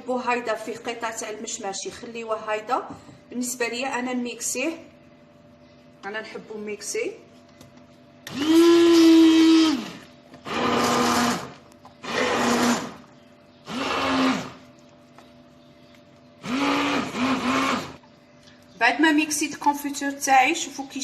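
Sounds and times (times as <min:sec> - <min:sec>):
electric blender pulsing: 0:08.3 - 0:14.6, 0:16.4 - 0:18.0.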